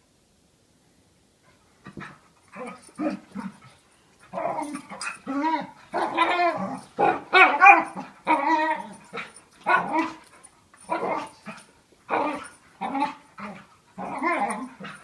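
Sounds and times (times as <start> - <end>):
dog whining yipping and barking: 4.3 - 15.0.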